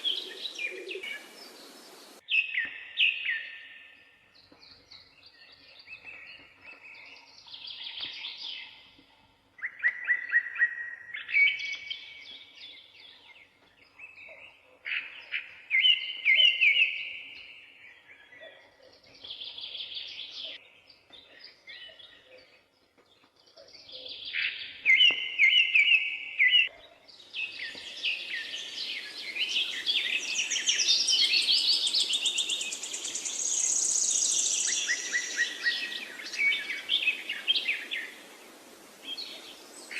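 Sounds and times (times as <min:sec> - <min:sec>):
songbirds trilling: 0:00.0 - 0:02.7, 0:11.3 - 0:39.9.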